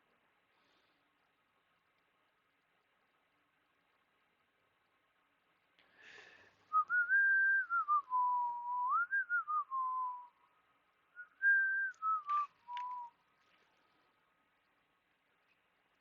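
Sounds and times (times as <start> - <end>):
person whistling a slow tune: 6.7 - 10.4, 11.2 - 13.2
brief rustle: 11.8 - 14.1.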